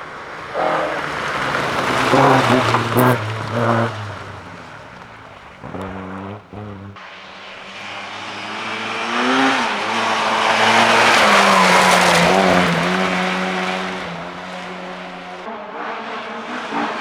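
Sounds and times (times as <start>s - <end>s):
tyre noise: 0.0s - 7.0s
rally car engine passing: 0.0s - 17.0s.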